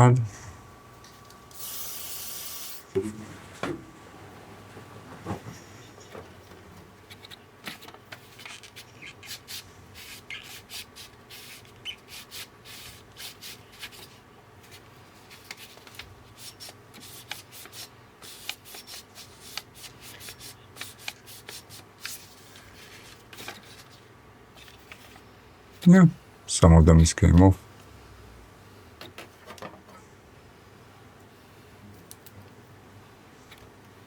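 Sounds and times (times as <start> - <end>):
hands rubbing and scraping circuit card: 7.1 - 14.1, 14.7 - 24.0.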